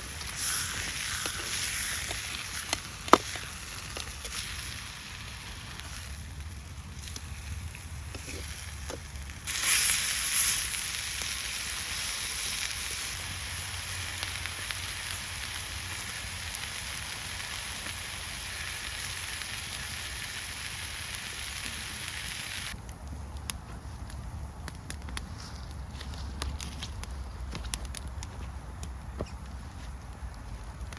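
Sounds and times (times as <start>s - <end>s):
steak sizzling in a pan: 0.0s - 6.4s, 7.0s - 22.7s.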